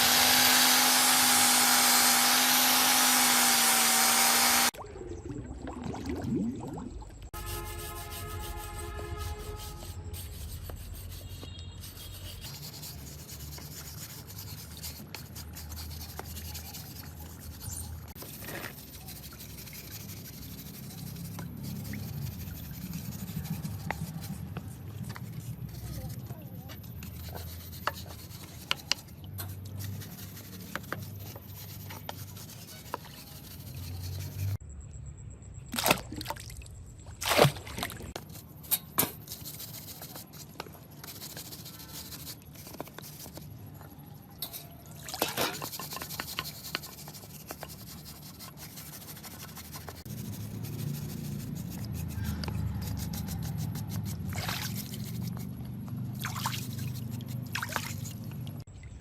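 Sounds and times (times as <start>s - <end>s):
liquid trickling and dripping: 55.6s - 59.0s.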